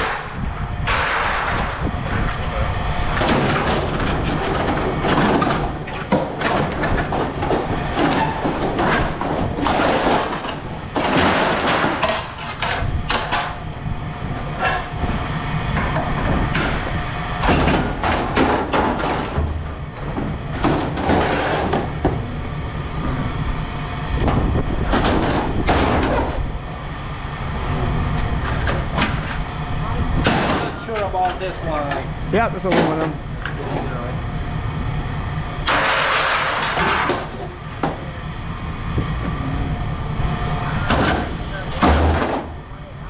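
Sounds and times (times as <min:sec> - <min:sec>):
scrap metal clanging and scraping: 0:00.0 - 0:13.6, 0:14.5 - 0:22.2, 0:35.6 - 0:37.6
heavy machinery rumbling: 0:00.0 - 0:43.0.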